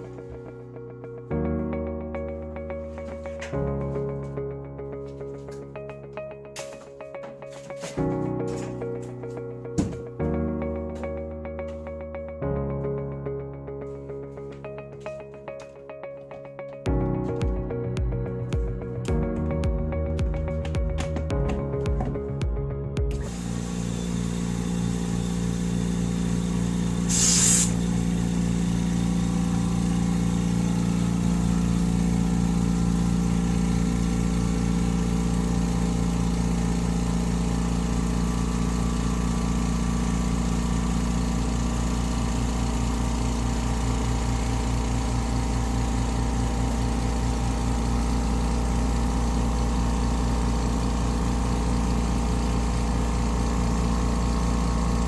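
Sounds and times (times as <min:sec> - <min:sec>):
air compressor motor hum: 0:23.1 - 0:55.0
short air hiss: 0:27.1 - 0:27.8.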